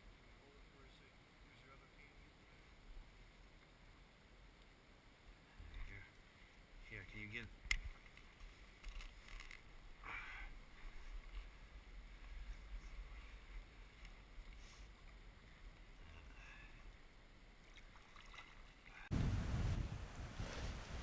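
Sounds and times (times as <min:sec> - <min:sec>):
flowing water hiss: 0:18.0 - 0:21.0
low rumble: 0:19.1 - 0:21.0.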